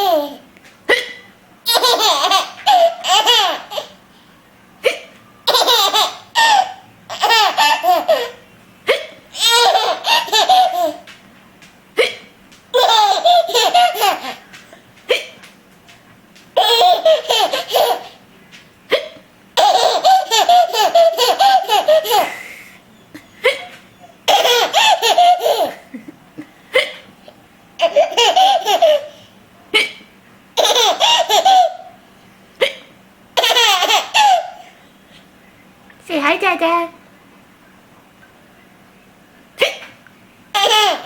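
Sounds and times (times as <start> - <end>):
baby belly laughter: 0.0 - 4.0, 4.8 - 11.1, 12.0 - 14.4, 16.6 - 18.2, 18.9 - 22.4, 23.2 - 26.1, 27.8 - 29.2, 30.6 - 32.0, 32.6 - 34.6, 40.5 - 41.0
woman hiccuping: 0.9 - 1.3, 12.0 - 12.3, 18.9 - 19.2, 32.6 - 32.9, 39.6 - 40.0.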